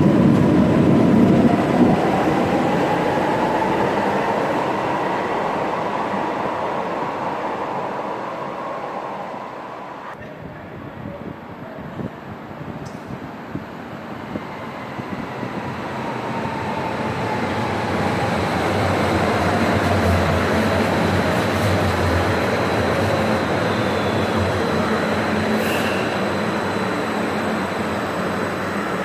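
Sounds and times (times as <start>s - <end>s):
light rail train running: 0.0s - 29.0s.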